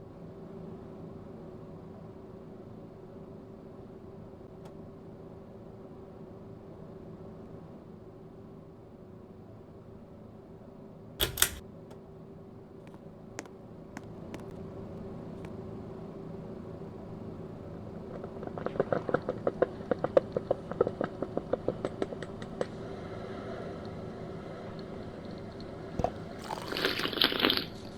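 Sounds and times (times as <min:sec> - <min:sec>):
sharp double click: 0:11.2 - 0:11.6.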